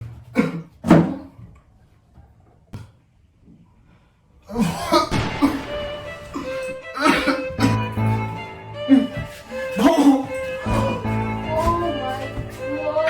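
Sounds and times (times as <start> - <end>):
person coughing: 0.3 - 0.8, 6.3 - 7.8, 9.8 - 10.4
music: 5.1 - 13.0.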